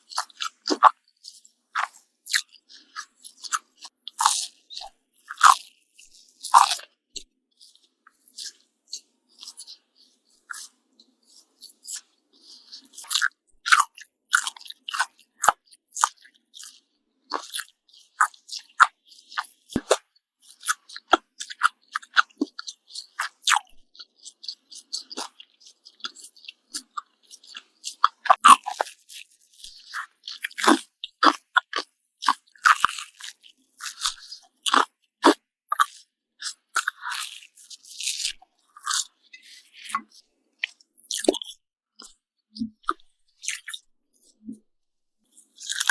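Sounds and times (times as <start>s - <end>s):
crunchy bacon chewing: 0.1s - 43.8s, 45.3s - 45.9s
toast chewing: 0.1s - 44.6s, 45.3s - 45.9s.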